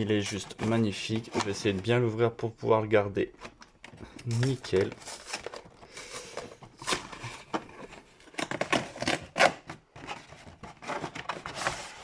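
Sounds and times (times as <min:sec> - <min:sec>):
packaging scrapes and rustles: 0:04.2 - 0:12.0.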